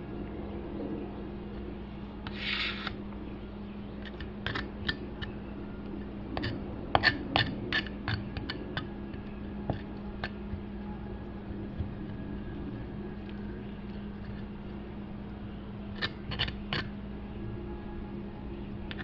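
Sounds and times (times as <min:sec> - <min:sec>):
knife scraping meat: 0:02.3 - 0:03.0.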